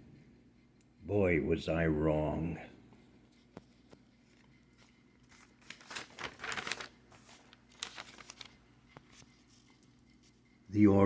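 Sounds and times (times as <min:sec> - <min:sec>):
paper rustling: 0:03.3 - 0:10.5.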